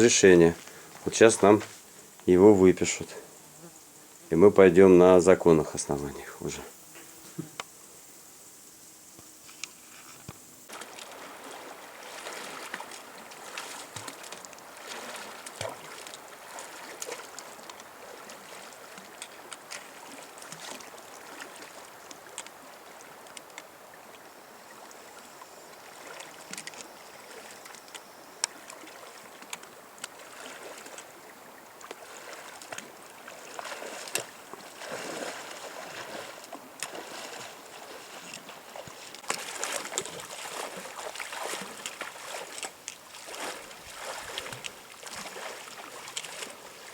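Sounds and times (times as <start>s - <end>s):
water splashing and sloshing: 10.7s - 46.9s.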